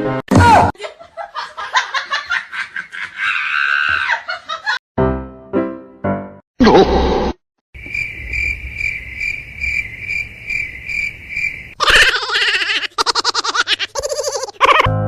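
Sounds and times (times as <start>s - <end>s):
high insect chirping: 7.8s - 11.8s
rapidly warbling insect call: 7.8s - 12.1s.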